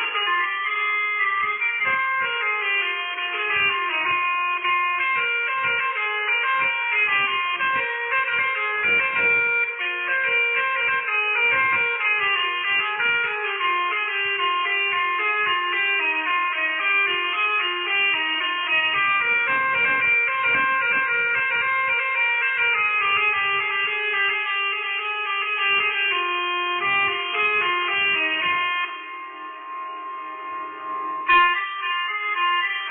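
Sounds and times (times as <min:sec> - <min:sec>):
melodica playing a melody: 0:00.0 - 0:32.9
faint low thumps: 0:18.8 - 0:21.8.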